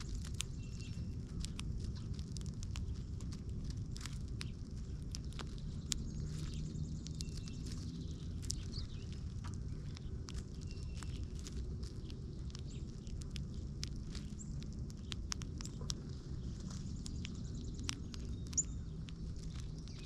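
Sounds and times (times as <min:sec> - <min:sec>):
faint bird chirps: 0:00.0 - 0:02.1, 0:05.5 - 0:13.2, 0:14.2 - 0:20.0
seed pecking clicks: 0:00.0 - 0:20.0
steady low rumble: 0:00.0 - 0:20.0.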